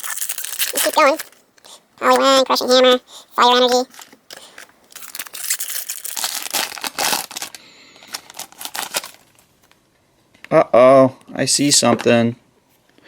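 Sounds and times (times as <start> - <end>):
foil wrapper tearing and crinkling: 0.0 - 1.4, 3.5 - 9.4.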